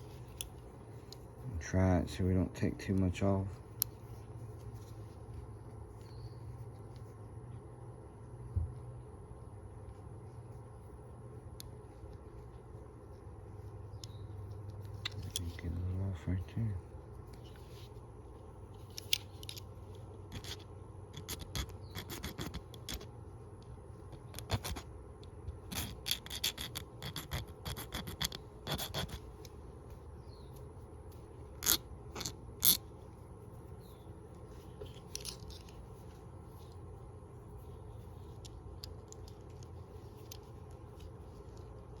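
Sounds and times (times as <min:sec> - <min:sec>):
hand file scraping metal: 0:25.7 - 0:29.2.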